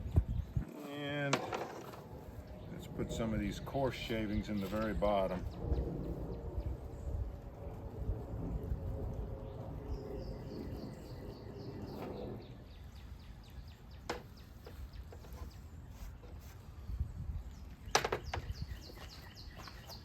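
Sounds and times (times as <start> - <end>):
low outdoor rumble: 0.0 - 20.0
bird chirping trill: 9.3 - 16.0, 16.8 - 20.0.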